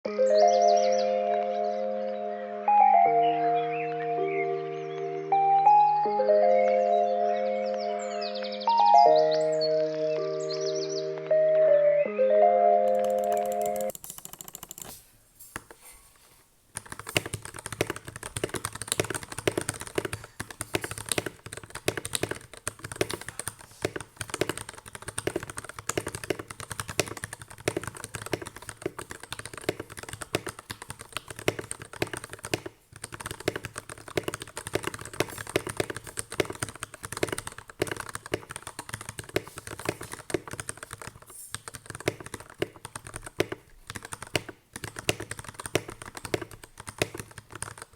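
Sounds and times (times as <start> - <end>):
fast typing on mechanical keyboard: 12.9 - 15.0, 16.7 - 47.9.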